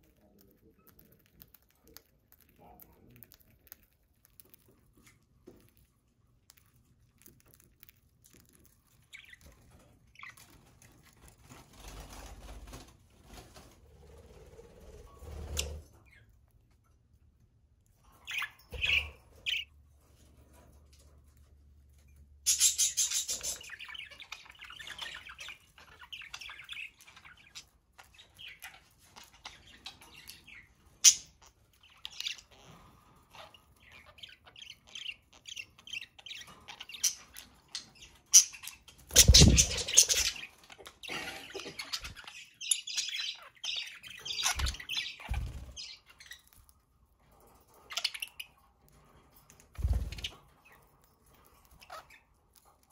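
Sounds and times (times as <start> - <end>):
budgerigars chirping: 18.3 - 19.7, 22.5 - 46.5, 51.6 - 52.4.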